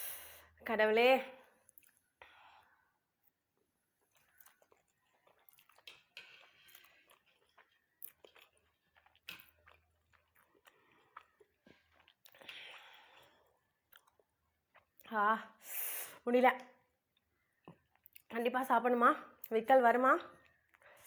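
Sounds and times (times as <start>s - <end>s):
soft breathy puffs: 0.0s - 0.6s, 15.6s - 16.2s
person chewing noodles: 1.7s - 15.1s, 17.1s - 18.3s.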